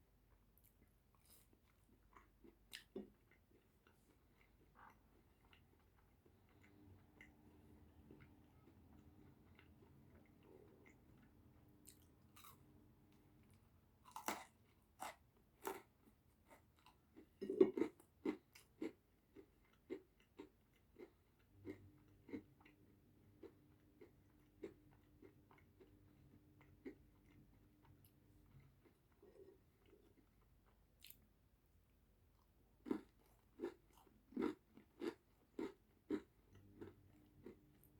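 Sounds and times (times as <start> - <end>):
rhythmic chewing with mouth clicks: 0.3 - 12.6, 13.4 - 31.3, 32.8 - 37.9
crunchy bites: 14.0 - 15.9.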